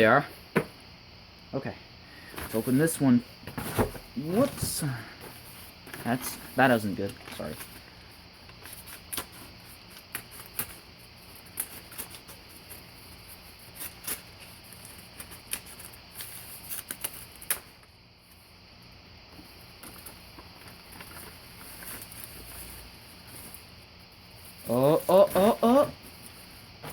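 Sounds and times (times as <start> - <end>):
packing crinkling and clicking: 5.9 - 7.8, 13.7 - 17.9.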